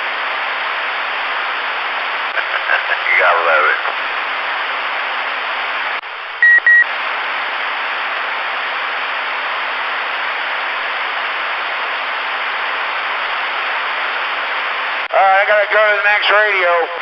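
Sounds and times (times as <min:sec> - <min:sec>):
radio static hiss: 0:00.0 - 0:17.0
short high beeps: 0:06.4 - 0:06.8.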